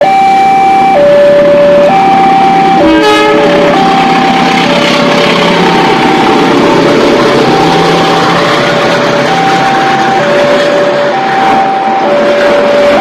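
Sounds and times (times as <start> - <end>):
two-note vehicle horn call: 2.8 - 3.5.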